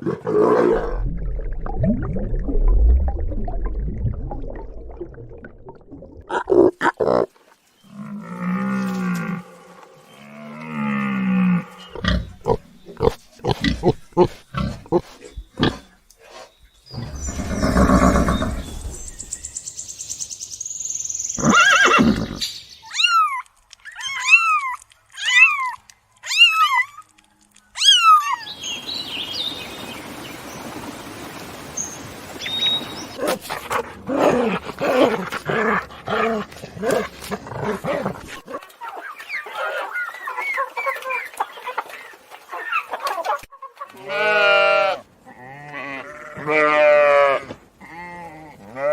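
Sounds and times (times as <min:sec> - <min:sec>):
noisy animal calling with cries: 0:27.7 - 0:28.5
animal grunts: 0:33.2 - 0:38.5.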